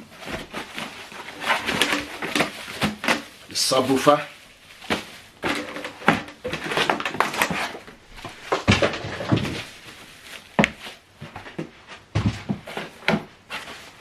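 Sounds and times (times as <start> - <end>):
cardboard box knocks and rustling: 8.2 - 9.7.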